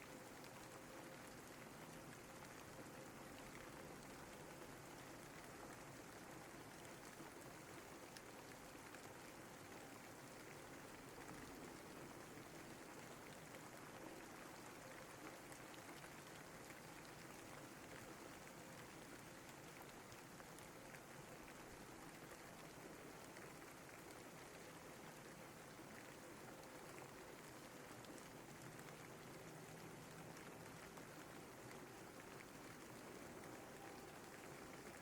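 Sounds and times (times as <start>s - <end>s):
rain falling: 0.0s - 35.0s.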